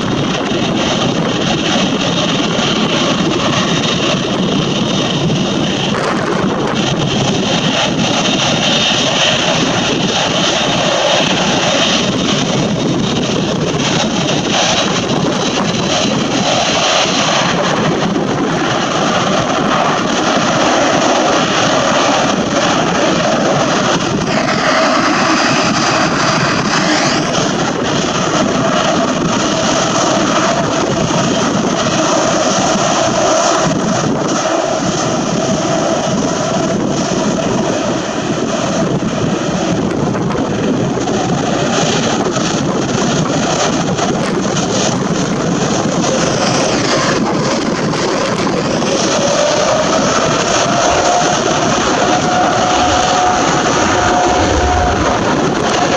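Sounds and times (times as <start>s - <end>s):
hissing pitch sweep of passing aircraft: 0.0s - 31.3s, 40.8s - 55.9s
jet engines at takeoff power: 0.0s - 55.9s.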